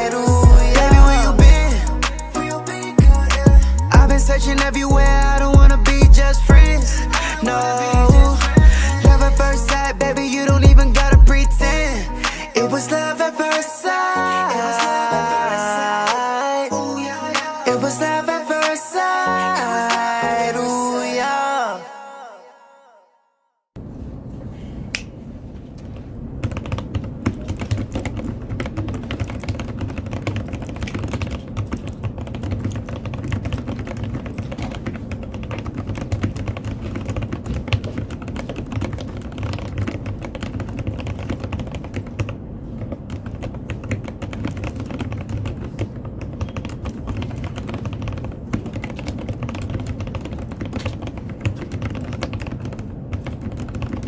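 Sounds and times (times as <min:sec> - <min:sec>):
mechanical keyboard typing: 0:26.4 - 0:54.0.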